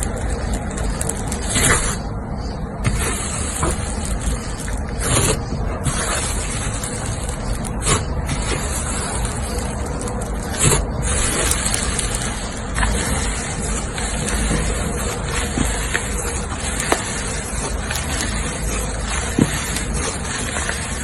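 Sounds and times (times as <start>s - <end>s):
slime squishing: 0.0s - 21.0s
slime popping: 14.0s - 21.0s.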